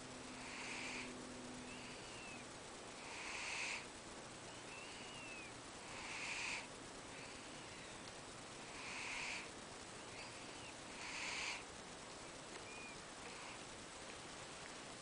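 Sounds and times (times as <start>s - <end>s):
cat snoring: 0.3s - 2.4s, 3.0s - 3.9s, 4.6s - 7.9s, 8.6s - 11.7s.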